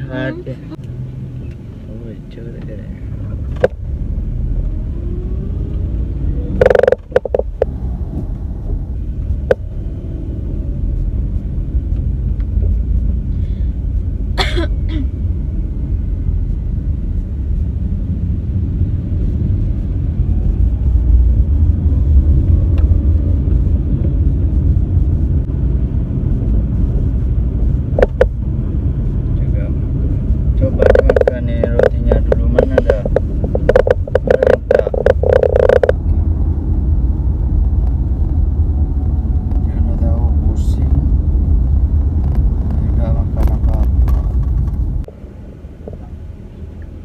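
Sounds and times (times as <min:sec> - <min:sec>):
car road noise rumble: 0:00.0 - 0:47.0
person coughing: 0:14.4 - 0:15.1.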